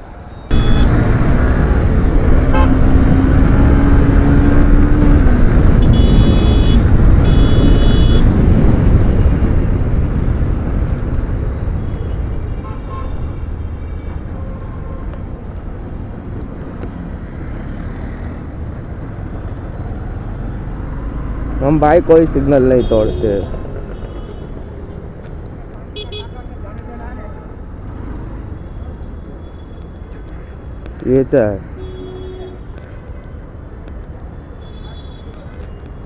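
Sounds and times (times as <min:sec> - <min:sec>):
motorcycle road noise: 0:00.0 - 0:36.0
vehicle horn honks: 0:00.5 - 0:01.0, 0:02.5 - 0:02.8, 0:05.8 - 0:08.3
wind rushing over microphone: 0:00.8 - 0:11.8.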